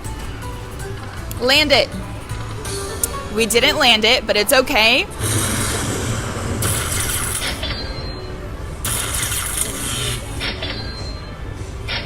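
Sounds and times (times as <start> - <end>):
steady low hum: 0.0 - 11.9
slot machine rattling hiss: 5.2 - 8.0, 8.8 - 10.8.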